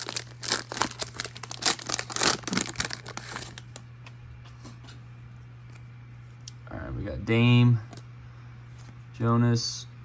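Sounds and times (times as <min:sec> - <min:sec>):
plastic wrapper tearing and crinkling: 0:00.0 - 0:03.8.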